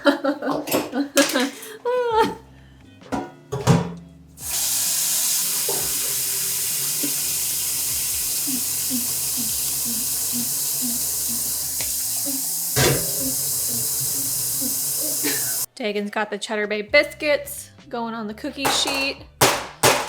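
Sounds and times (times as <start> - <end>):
kitchen tap running: 4.4 - 15.7.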